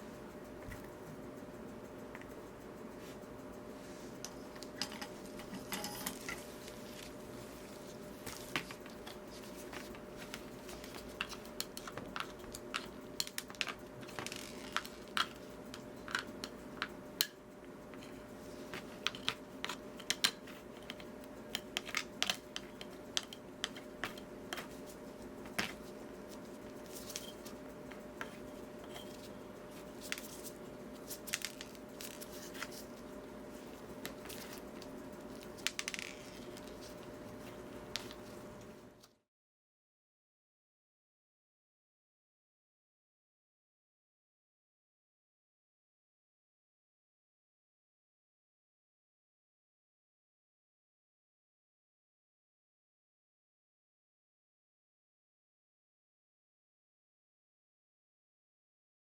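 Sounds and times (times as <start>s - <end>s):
steady low hum: 0.0s - 39.1s
hand tools clicking and tapping: 4.1s - 7.3s, 8.4s - 38.7s.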